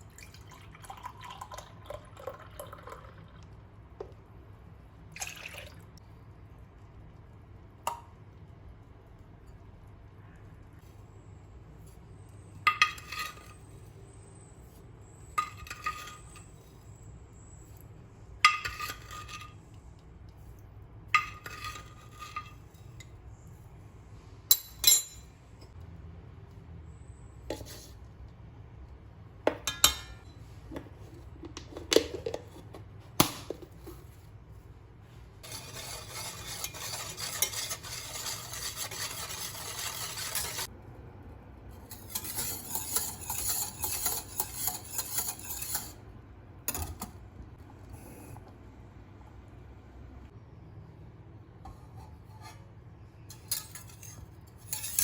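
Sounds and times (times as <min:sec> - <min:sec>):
stirring in a bowl: 0:06.4 - 0:23.8, 0:35.1 - 0:40.7, 0:41.8 - 0:46.1, 0:51.6 - 0:55.0
scraping strokes: 0:35.4 - 0:40.7, 0:41.8 - 0:46.0
utensils clinking against bowls: 0:35.4 - 0:40.7, 0:41.9 - 0:46.0, 0:53.3 - 0:55.0.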